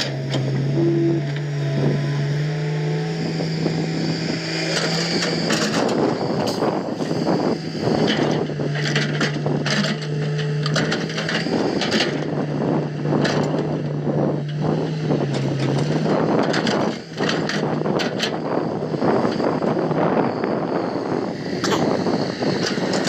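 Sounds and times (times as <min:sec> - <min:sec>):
excavator engine hum: 0:00.0 - 0:23.0.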